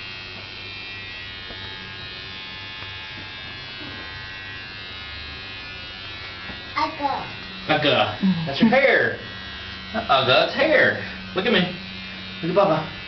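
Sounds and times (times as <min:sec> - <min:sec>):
electric hair clippers buzzing: 0:00.0 - 0:13.0.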